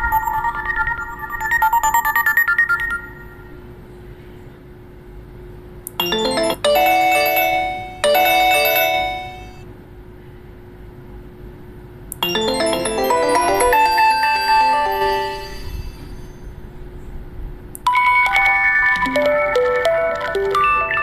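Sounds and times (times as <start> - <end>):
phone ringtone tune: 0.0 - 3.5, 6.0 - 9.6, 12.2 - 16.4, 17.9 - 21.0
phone chime melody: 6.0 - 9.6, 12.2 - 16.4.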